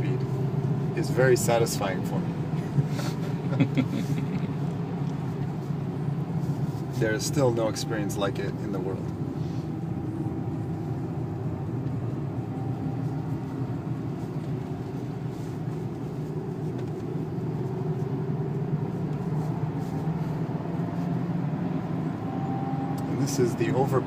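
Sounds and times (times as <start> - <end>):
diesel engine running: 0.0 - 24.0
tyre and road noise: 0.0 - 24.0.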